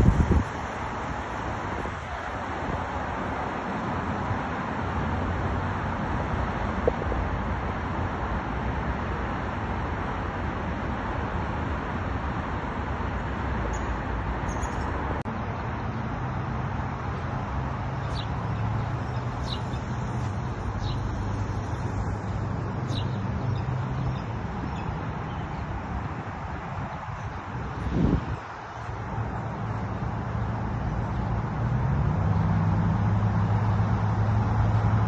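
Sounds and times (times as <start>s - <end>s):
traffic noise: 0.0s - 35.0s
bird chirps: 13.7s - 14.9s, 18.0s - 21.8s, 22.8s - 25.4s
low engine hum: 15.0s - 35.0s.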